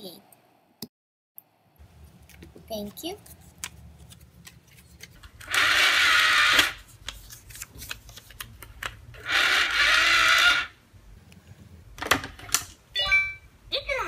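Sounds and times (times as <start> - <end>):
toy cash register motor whirring: 5.4 - 6.8, 9.2 - 10.8.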